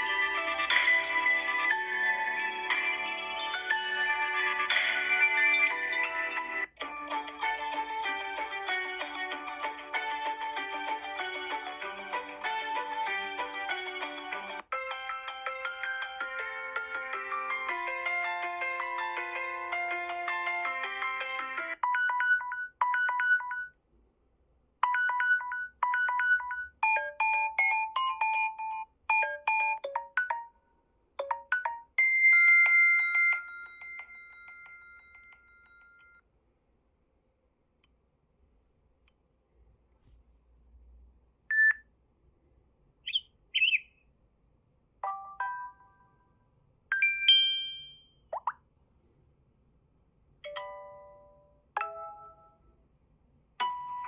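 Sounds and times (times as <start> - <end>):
phone alert tones: 24.8 - 30.5, 31.2 - 32.0, 46.9 - 48.5
short blips and pops: 46.9 - 48.6.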